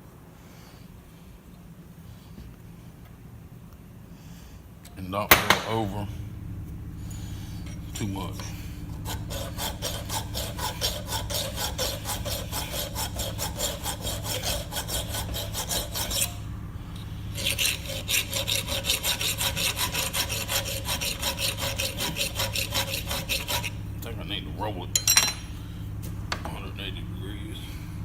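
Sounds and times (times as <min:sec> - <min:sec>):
hand file rasping on steel: 0:07.7 - 0:16.4, 0:17.4 - 0:23.8.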